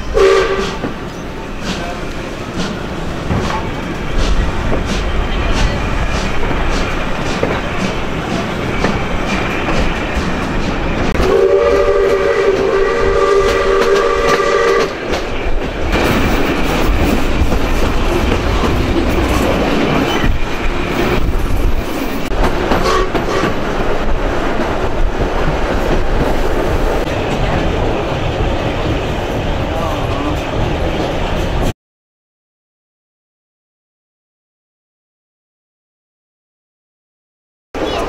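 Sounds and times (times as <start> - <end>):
train running with rail clicks: 0.0 - 31.7, 37.8 - 38.0
steam whistle chord: 0.1 - 0.8, 11.2 - 14.9.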